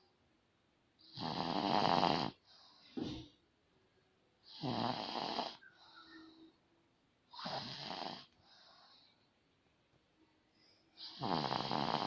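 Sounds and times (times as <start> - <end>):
person snoring: 1.1 - 2.4, 4.5 - 5.6, 7.4 - 8.3, 11.0 - 12.0
quiet breath: 2.3 - 4.7, 5.3 - 11.8.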